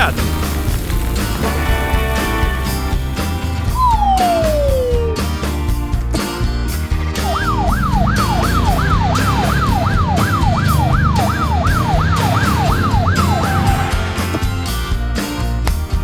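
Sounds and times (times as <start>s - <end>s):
background music with steady beat: 0.0s - 16.0s
siren wailing in rapid sweeps: 3.8s - 5.4s, 7.2s - 14.4s.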